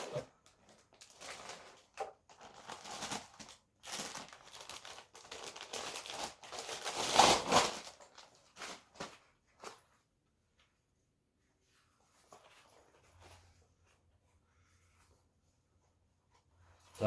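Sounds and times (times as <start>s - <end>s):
packaging crinkling and rustling: 0.0s - 9.8s.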